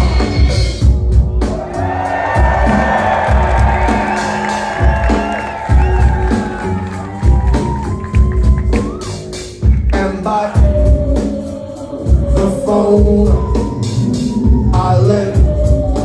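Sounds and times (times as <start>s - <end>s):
bass riff: 0.0s - 10.0s
drums: 0.0s - 16.0s
live band playing: 0.0s - 16.0s
crowd cheering and whooping: 1.4s - 9.4s.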